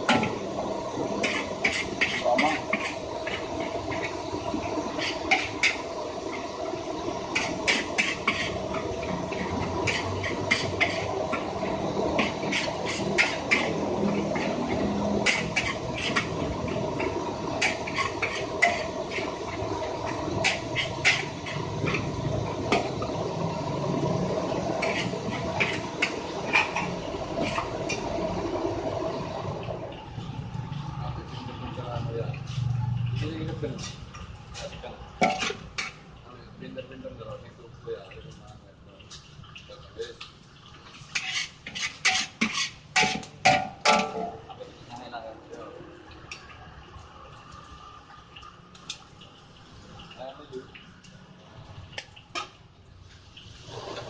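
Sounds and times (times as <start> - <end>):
food sizzling: 0.0 - 54.0
steady hiss of frying: 0.0 - 54.0
metal spatula scraping a wok: 1.2 - 5.8, 7.3 - 22.9, 24.6 - 28.2, 41.0 - 44.2.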